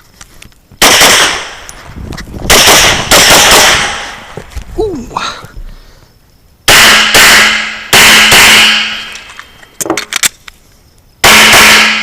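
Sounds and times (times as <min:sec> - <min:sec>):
pistol shots: 0:00.8 - 0:01.6, 0:02.5 - 0:04.3, 0:06.7 - 0:09.1, 0:11.2 - 0:12.0.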